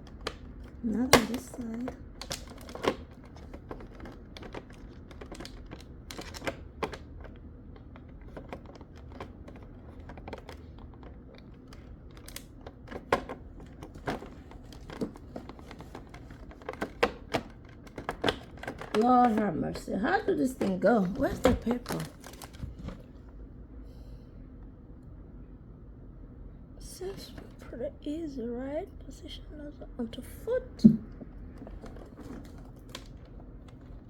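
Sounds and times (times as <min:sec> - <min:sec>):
plastic parts clicking and knocking: 0:00.0 - 0:23.0, 0:30.8 - 0:34.0.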